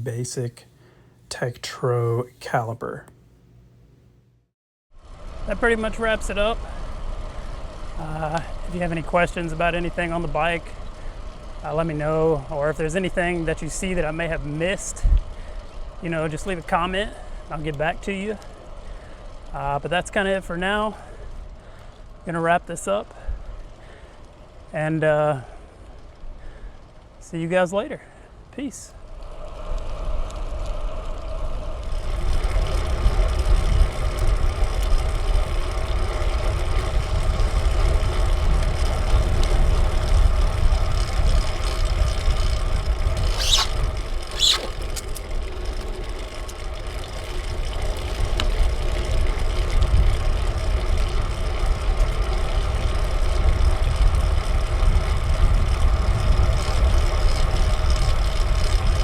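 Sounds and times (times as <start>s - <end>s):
bicycle tyres and drivetrain hum: 5.0s - 59.0s
short high squeaks: 43.2s - 45.3s.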